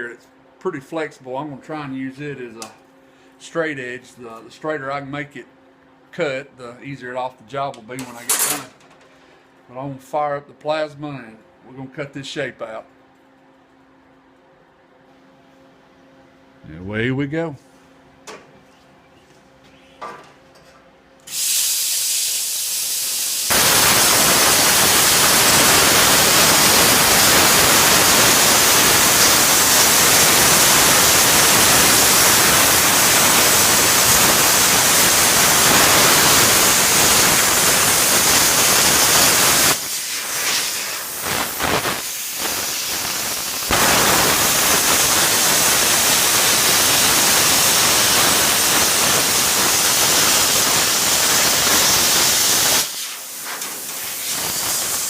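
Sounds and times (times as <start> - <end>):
plasma cutter hissing through steel: 21.3 - 55.0.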